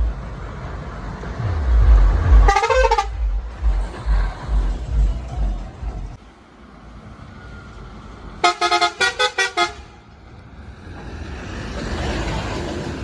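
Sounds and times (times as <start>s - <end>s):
bus approaching: 0.0s - 13.0s
multi-tone air horn toots: 2.3s - 5.2s, 8.4s - 10.0s.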